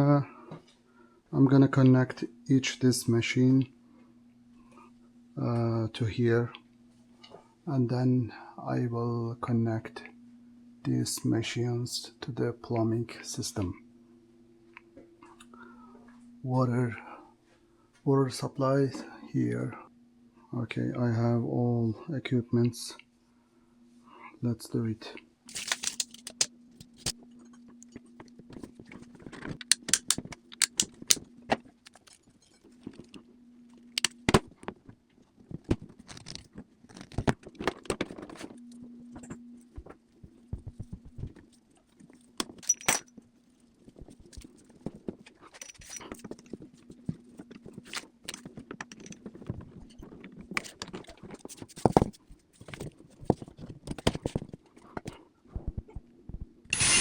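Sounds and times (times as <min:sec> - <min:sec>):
steady low hum: 0:00.0 - 0:57.0
metal tools clinking and scraping: 0:31.9 - 0:33.1, 0:42.6 - 0:43.2, 0:45.5 - 0:46.6, 0:47.8 - 0:49.2.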